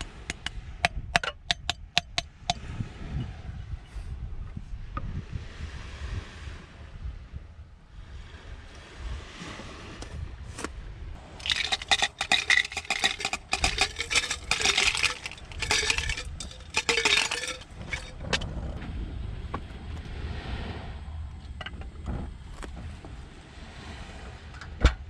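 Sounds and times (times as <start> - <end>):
ice cubes clinking in glass: 11.4 - 18.4.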